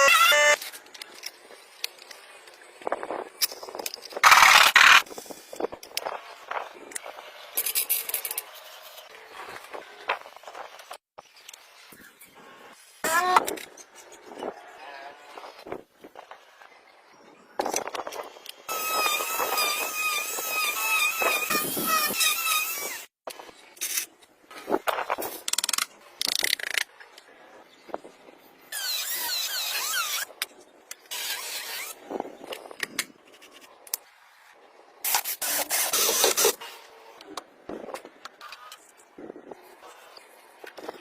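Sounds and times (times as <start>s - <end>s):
wavering squeal: 0.0s - 0.6s.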